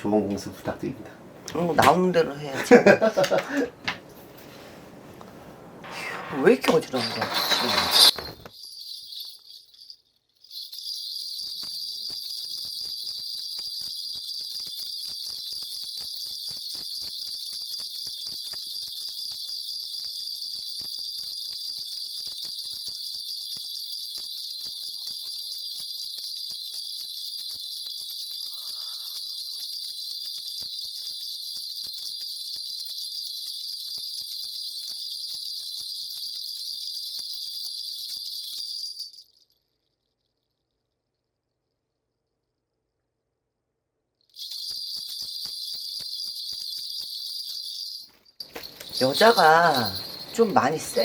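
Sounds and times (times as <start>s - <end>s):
bell cluster jingling: 5.9s - 39.7s, 44.4s - 51.0s.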